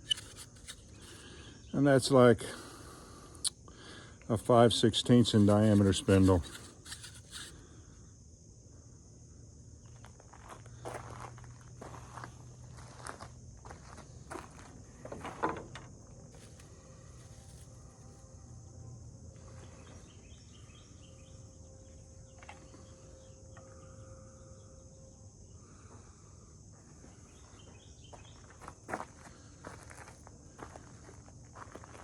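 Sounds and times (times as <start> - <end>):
handling rustles: 0.0 - 1.2, 5.2 - 7.5
high-pitched insect drone: 0.0 - 32.0.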